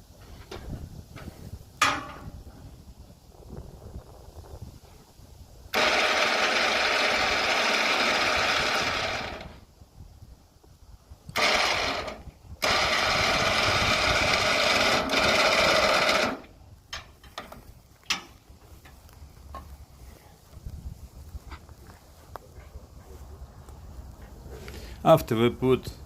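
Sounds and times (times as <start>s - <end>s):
motor running in bursts: 5.7s - 9.6s, 11.3s - 16.5s.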